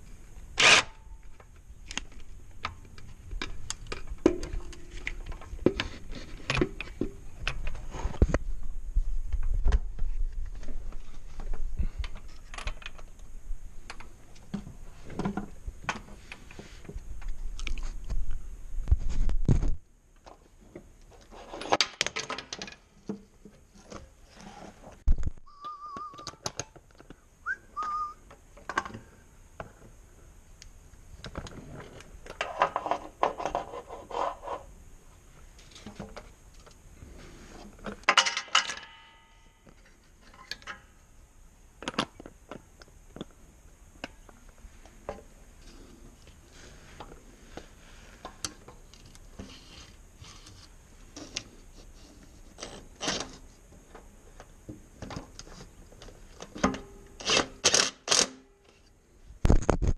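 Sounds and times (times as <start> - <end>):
short wavering high tones: 25.5 - 26.3
tools and metal parts clinking: 38.1 - 40.8.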